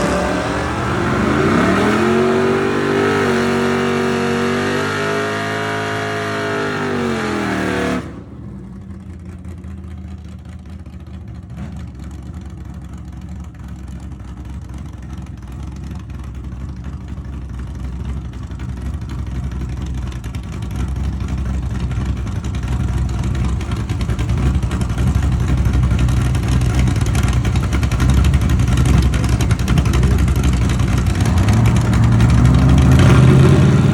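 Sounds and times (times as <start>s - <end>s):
car engine revving hard: 0.0s - 8.3s, 28.0s - 33.9s
low rough engine rumble: 8.1s - 33.9s.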